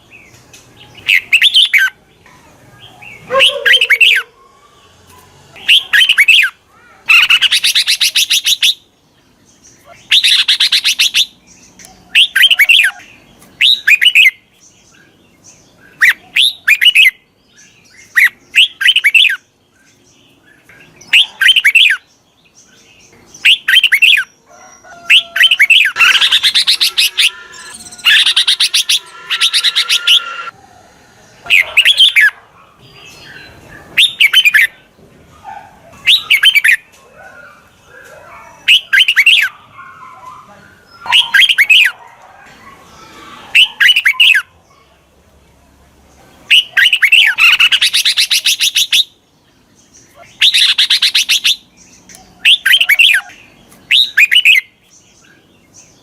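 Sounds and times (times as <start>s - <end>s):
bird rapid chattering: 25.1s - 30.5s
bird warbling phrases: 25.1s - 30.5s.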